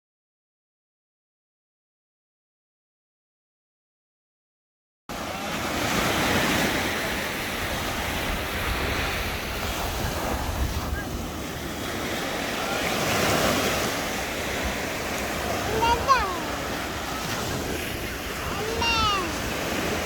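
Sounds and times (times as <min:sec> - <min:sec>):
sea waves washing onto shore: 0:05.1 - 0:20.0
wind buffeting microphone: 0:07.5 - 0:12.7.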